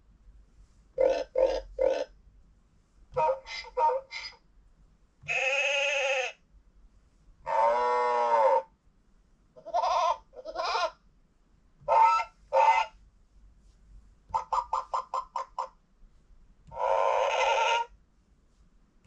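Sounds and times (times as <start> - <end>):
animal calls from small speaker: 1.0 - 2.2, 3.2 - 4.4, 5.2 - 6.4, 7.4 - 8.8, 9.6 - 11.0, 11.8 - 13.0, 14.3 - 15.8, 16.7 - 18.0.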